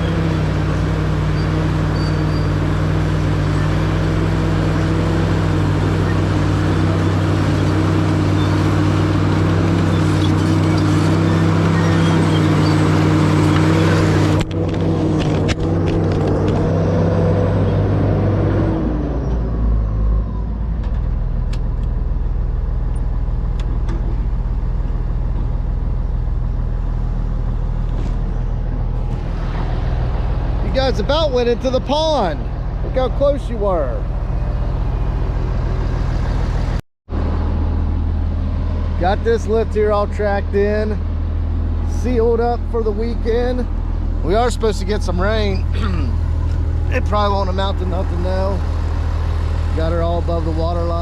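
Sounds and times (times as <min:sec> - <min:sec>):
diesel engine running hard: 0:00.0 - 0:51.0.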